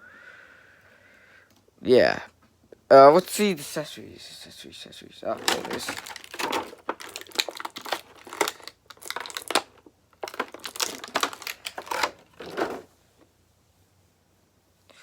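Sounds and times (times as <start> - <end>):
plastic packaging crinkling: 5.3 - 12.9.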